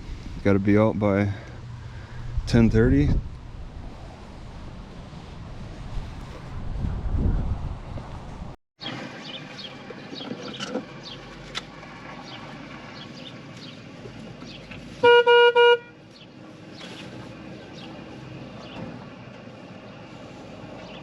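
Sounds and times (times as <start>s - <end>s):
outdoor background noise: 0.0s - 21.0s
car horn toots: 15.0s - 16.0s.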